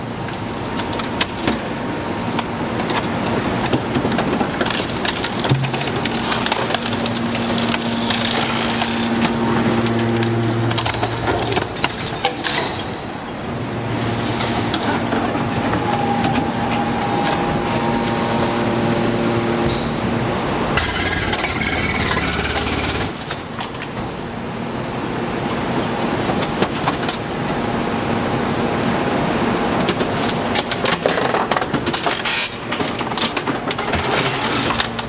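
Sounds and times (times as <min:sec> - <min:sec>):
scrap metal cracking and clattering: 0:02.8 - 0:13.4, 0:20.8 - 0:24.2, 0:29.7 - 0:35.0.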